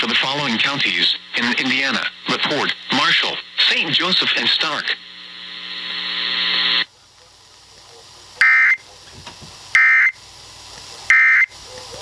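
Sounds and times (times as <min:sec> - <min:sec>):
background hiss: 0:00.0 - 0:12.0
screeching data bursts: 0:08.4 - 0:09.0, 0:09.7 - 0:12.0.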